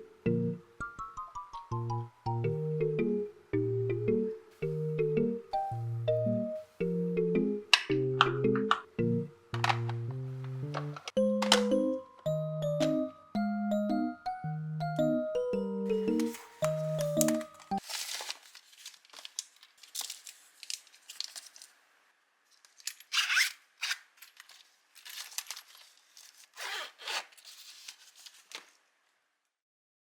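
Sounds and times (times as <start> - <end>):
bell-like mallet instrument music: 11.2 - 17.3
crisp rustling and scraping: 16.2 - 21.8, 22.6 - 28.8.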